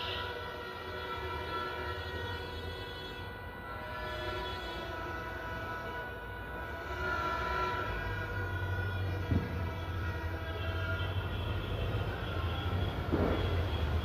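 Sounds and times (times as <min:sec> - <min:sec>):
horns in long steady notes: 0:00.0 - 0:14.0.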